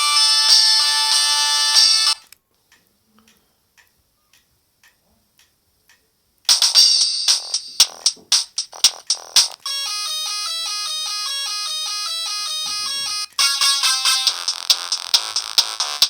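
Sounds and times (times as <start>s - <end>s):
mobile phone polyphonic ringtones: 0.0s - 2.2s, 8.8s - 16.0s
ringtone with drum-like hits: 6.5s - 16.0s.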